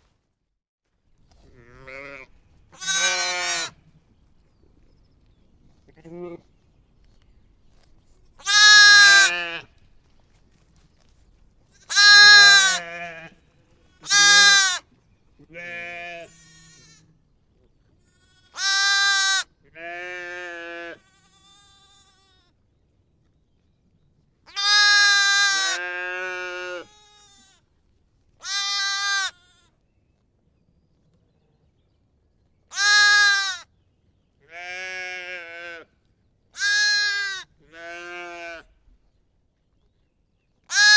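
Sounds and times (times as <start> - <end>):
sheep bleating: 1.5 - 3.8, 8.4 - 9.7, 11.9 - 14.8, 15.4 - 17.1, 18.0 - 22.5, 24.5 - 27.6, 28.4 - 29.7, 32.7 - 33.6, 34.5 - 35.9, 36.6 - 38.7.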